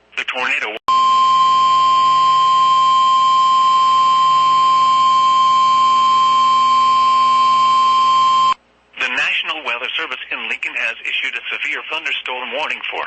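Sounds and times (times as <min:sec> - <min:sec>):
steady alarm tone: 0:00.9 - 0:08.6.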